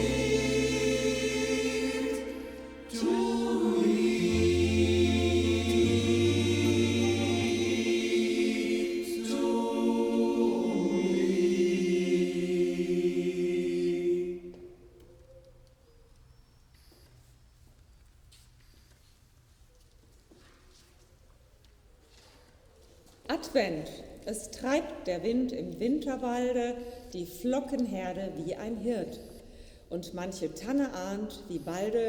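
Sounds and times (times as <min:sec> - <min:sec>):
choir singing held chords: 0:00.0 - 0:14.9.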